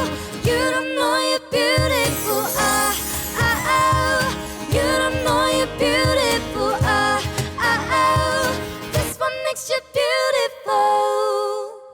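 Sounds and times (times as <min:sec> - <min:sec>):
pop song with singing: 0:00.0 - 0:11.9.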